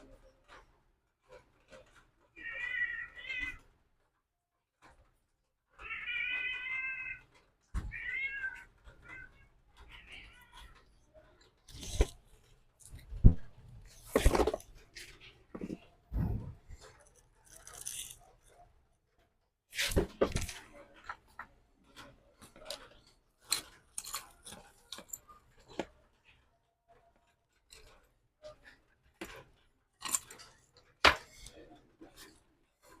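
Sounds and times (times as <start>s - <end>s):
cat meowing: 2.4s - 3.6s, 5.8s - 10.8s.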